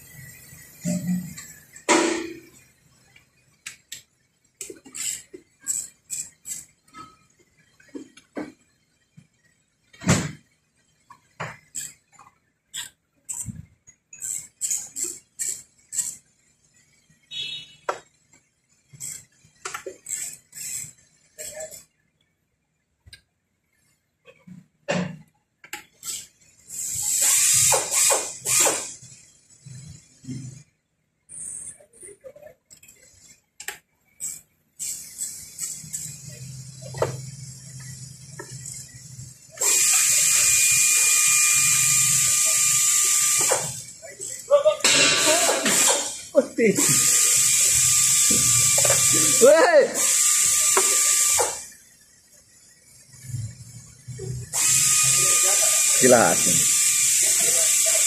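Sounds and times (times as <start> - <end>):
machine hissing with high whine: 0.0 - 2.7, 26.0 - 30.7, 34.2 - 58.0
metal tool rasping strokes: 4.7 - 7.4, 11.6 - 16.3, 18.9 - 21.9, 32.7 - 51.8.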